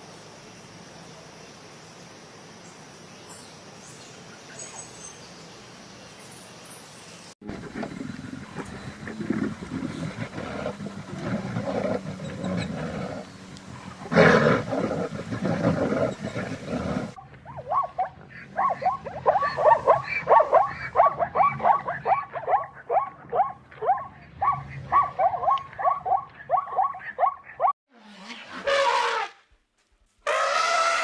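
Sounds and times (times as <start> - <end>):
low growling roars: 7.4 - 17.2.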